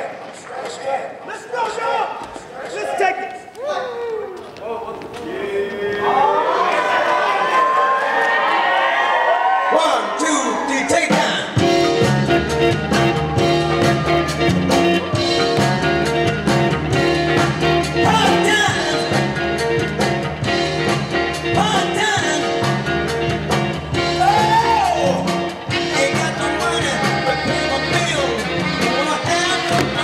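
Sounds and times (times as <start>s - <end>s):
steady music beat: 11.0s - 30.0s
person singing: 24.1s - 30.0s.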